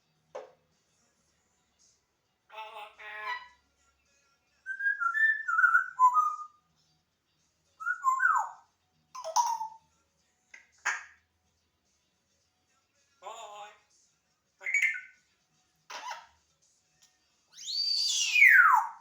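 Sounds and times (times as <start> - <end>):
parrot harsh calls: 2.5 - 3.6, 15.9 - 16.4, 17.6 - 19.0
parrot whistling: 4.7 - 6.6, 7.8 - 8.6, 14.6 - 15.2, 17.6 - 19.0.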